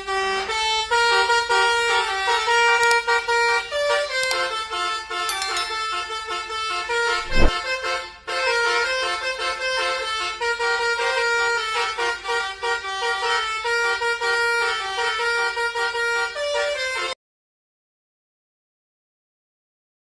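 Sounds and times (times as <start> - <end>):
bus horn playing melody: 10.4 - 17.0.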